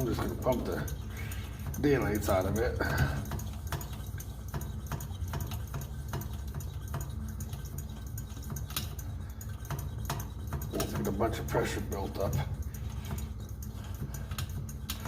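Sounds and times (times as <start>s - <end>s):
stove pump plunger clicking: 0.0s - 15.0s.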